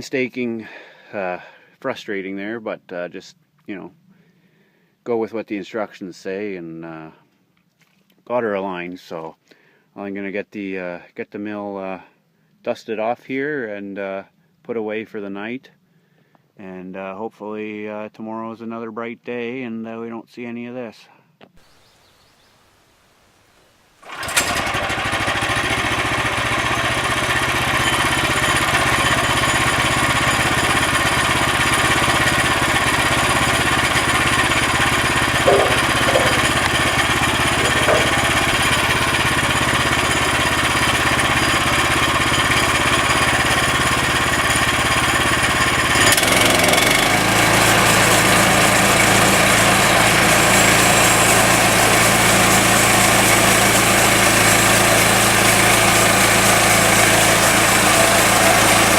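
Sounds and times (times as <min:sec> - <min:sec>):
small engine running: 0:24.0 - 0:58.9.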